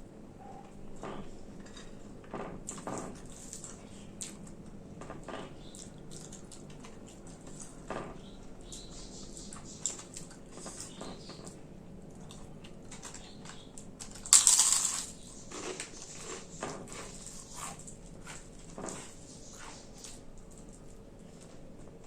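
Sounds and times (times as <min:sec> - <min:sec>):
soft chewing and mouth clicks: 0:02.7 - 0:14.2, 0:14.9 - 0:22.0
crisp crunch of biting: 0:12.9 - 0:17.6.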